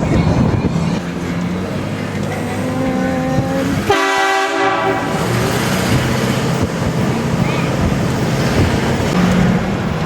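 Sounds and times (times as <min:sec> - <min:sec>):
air train horn blasting: 0:03.8 - 0:05.1.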